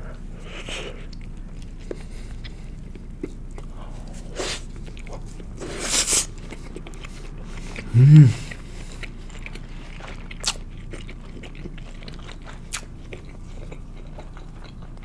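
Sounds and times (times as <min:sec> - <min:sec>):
noisy eating bursts: 0:00.0 - 0:15.0
chewing with wet mouth clicks: 0:00.1 - 0:15.0.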